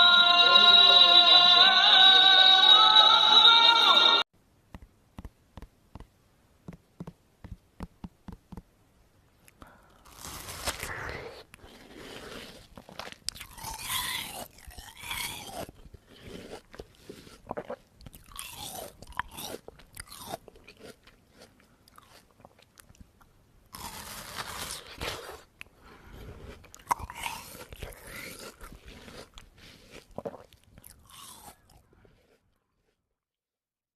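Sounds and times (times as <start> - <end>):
crunching and chewing: 9.4 - 33.2.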